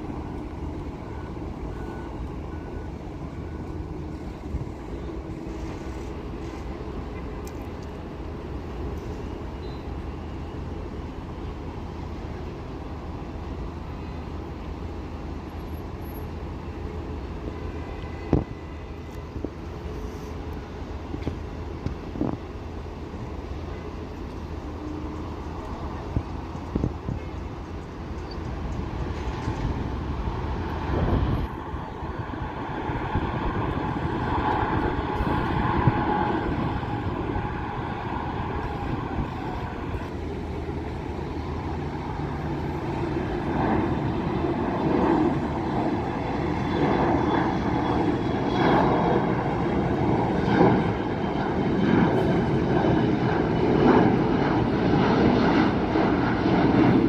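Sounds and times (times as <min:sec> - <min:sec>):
airliner engines rumbling: 0:00.0 - 0:57.0.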